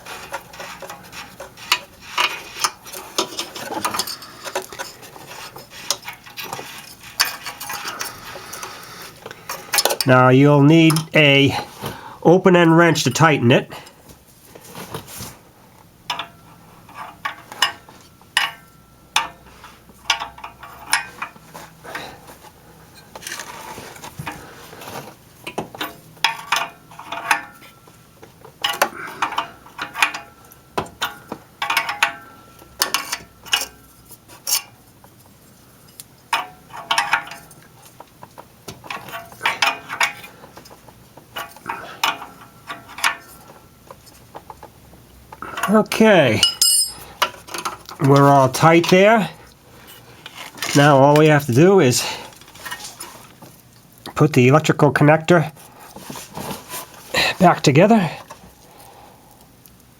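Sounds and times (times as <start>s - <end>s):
wrench clinking on metal: 28.6s - 33.8s, 38.8s - 40.3s, 46.3s - 49.0s.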